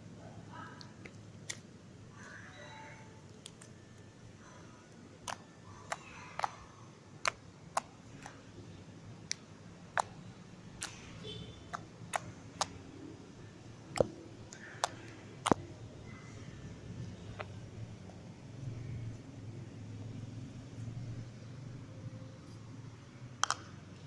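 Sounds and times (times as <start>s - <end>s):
slime clicking and popping: 5.2s - 8.4s, 9.2s - 13.0s, 13.8s - 15.6s, 23.4s - 23.8s.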